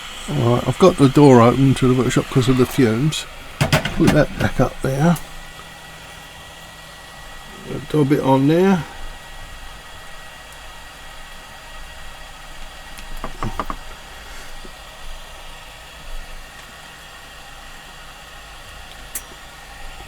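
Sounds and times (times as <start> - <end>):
thin high steady tone: 0.0 - 5.2
background hiss and hum: 0.0 - 20.0.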